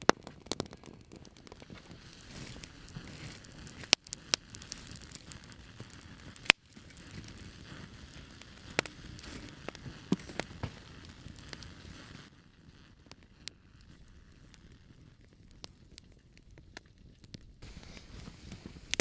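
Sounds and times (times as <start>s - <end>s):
crackling with sharp pops: 0.0s - 19.0s
faint steady hiss: 17.5s - 19.0s.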